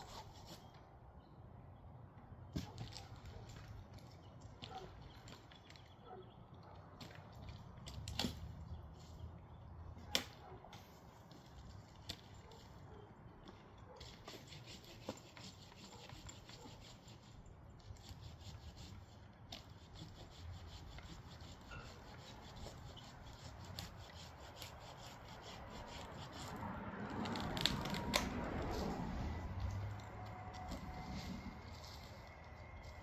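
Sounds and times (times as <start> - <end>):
faint rubbing and scraping: 0.0 - 0.8, 13.9 - 33.0.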